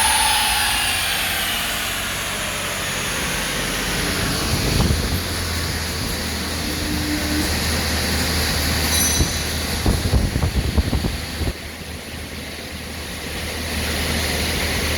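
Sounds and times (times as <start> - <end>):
rotary engine droning: 0.0 - 14.9.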